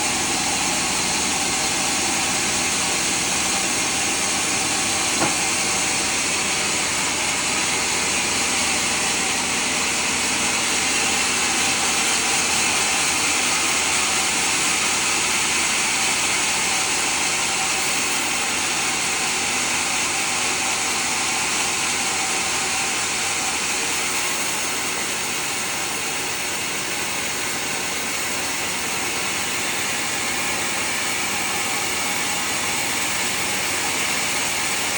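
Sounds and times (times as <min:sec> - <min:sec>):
saw blade cutting log: 0:01.4 - 0:08.4
brief knock: 0:05.1 - 0:05.7.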